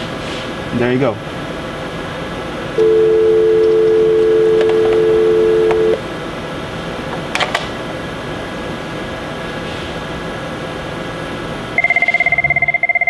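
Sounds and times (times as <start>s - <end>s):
phone dial tone: 2.8s - 6.0s, 11.8s - 13.0s.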